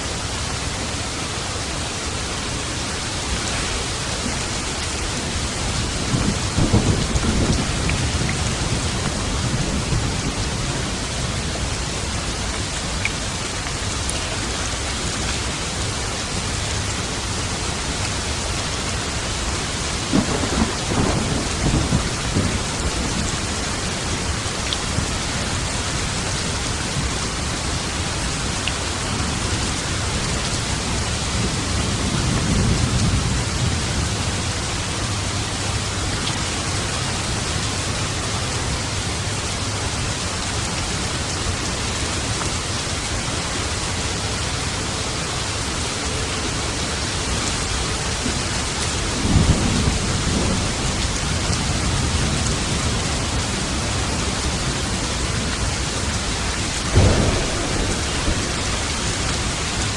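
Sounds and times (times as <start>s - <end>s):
steady rain: 0.0s - 59.9s
rolling thunder rumble: 5.2s - 13.0s, 16.4s - 35.9s, 48.9s - 59.9s
crackling thunder clap: 5.4s - 11.1s, 18.8s - 27.3s, 49.2s - 59.9s.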